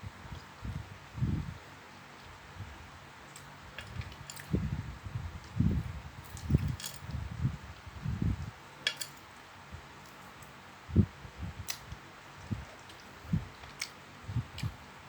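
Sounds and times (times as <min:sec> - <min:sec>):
soft chewing and mouth squishes: 0:11.6 - 0:14.8.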